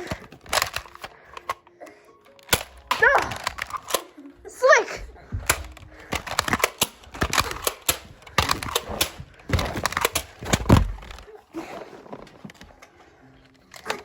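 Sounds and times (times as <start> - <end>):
toy blasters cocked and fired: 0.0 - 1.1, 2.4 - 4.1, 5.4 - 11.2.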